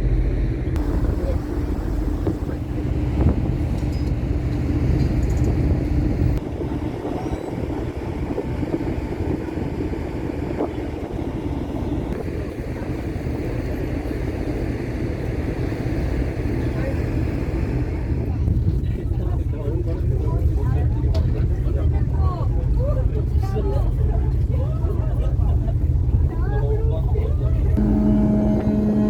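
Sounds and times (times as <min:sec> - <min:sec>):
steady hum: 0:00.0 - 0:07.0, 0:27.8 - 0:29.0
wind noise: 0:00.0 - 0:12.6
ferry engine rumble: 0:00.0 - 0:29.0.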